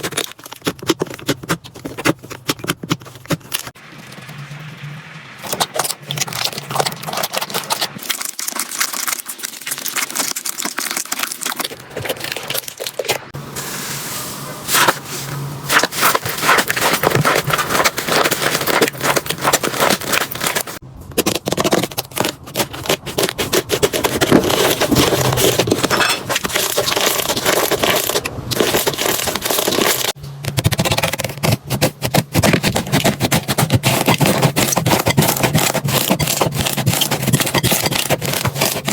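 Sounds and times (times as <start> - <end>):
slime crackling and popping: 5.4 - 13.1.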